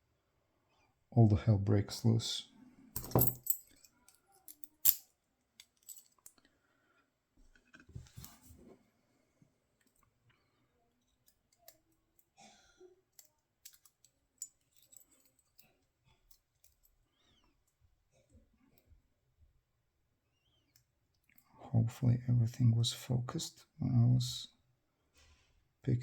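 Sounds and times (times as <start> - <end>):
padlock parts clicking: 3.0 - 6.4, 13.1 - 16.8.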